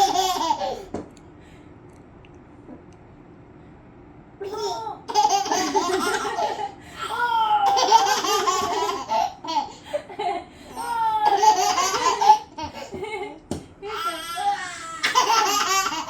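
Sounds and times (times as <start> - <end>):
baby laughing: 0.0 - 0.9, 4.4 - 9.8, 10.7 - 13.3, 13.9 - 16.0.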